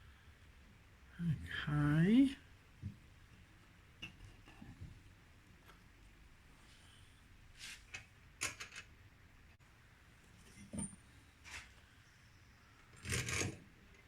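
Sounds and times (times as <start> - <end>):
metal parts clicking and knocking: 8.4 - 8.9, 13.0 - 13.6.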